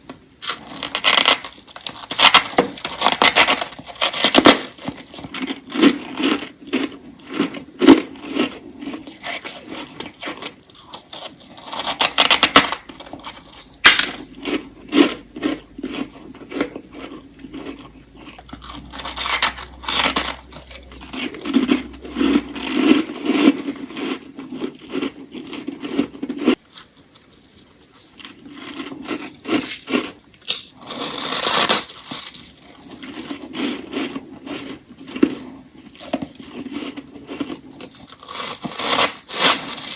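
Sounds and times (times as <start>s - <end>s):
frost being crunched and chewed: 0.0s - 39.9s.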